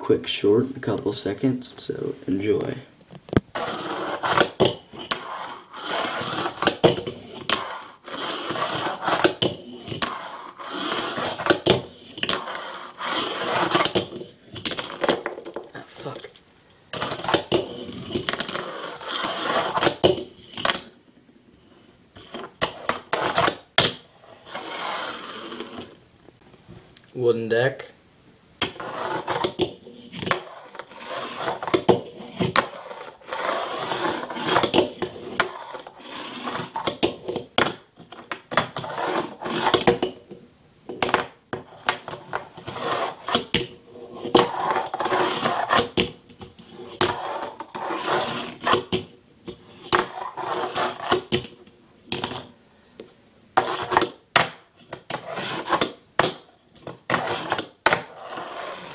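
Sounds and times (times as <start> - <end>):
fingerboard rolling and grinding: 3.4 - 15.7, 16.9 - 20.9, 22.2 - 26.0, 28.6 - 40.2, 41.0 - 52.5, 53.6 - 58.9
wheel and truck scraping: 3.5 - 9.4, 10.0 - 11.6, 12.2 - 14.0, 24.3 - 25.9, 30.2 - 37.0, 57.1 - 58.9.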